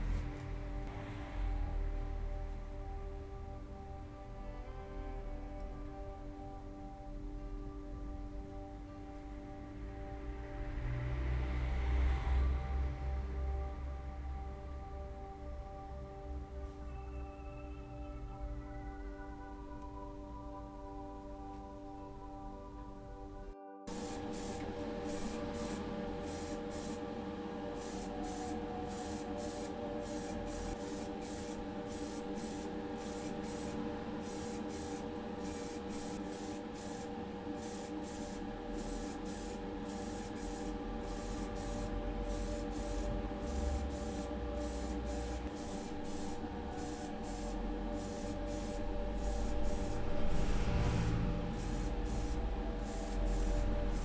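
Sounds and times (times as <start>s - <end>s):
mechanical hum: 0.0s - 54.0s
spray paint hissing: 23.9s - 27.0s, 27.7s - 54.0s.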